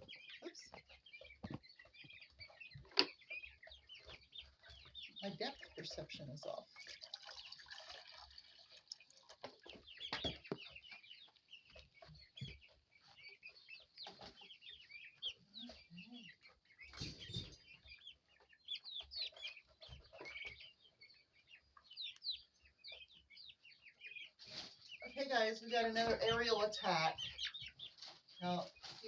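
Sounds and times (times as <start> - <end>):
knocks and rustles: 0.0 - 5.0, 16.8 - 18.0
chicks peeping and chirping: 0.0 - 29.0.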